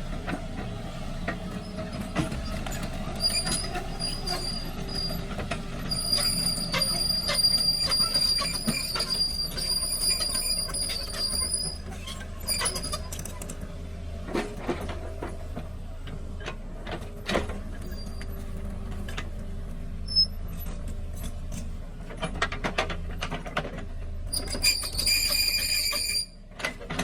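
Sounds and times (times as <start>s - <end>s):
excavator engine running: 0.0s - 27.0s
high metallic squeal: 3.2s - 5.3s, 5.9s - 13.0s, 24.3s - 26.4s.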